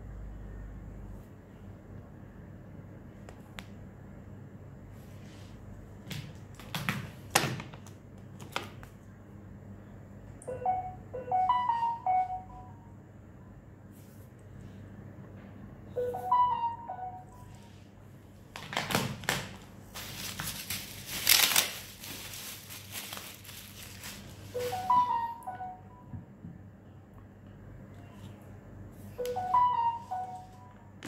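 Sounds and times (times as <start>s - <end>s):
plastic packaging crinkling: 18.5s - 24.6s.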